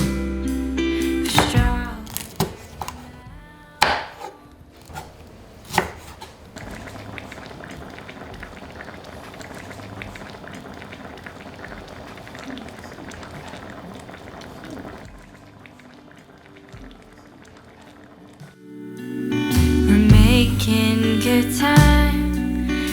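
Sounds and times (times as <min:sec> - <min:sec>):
kitchen utensils clattering: 0:04.0 - 0:07.5
liquid simmering in a pot: 0:04.8 - 0:18.4.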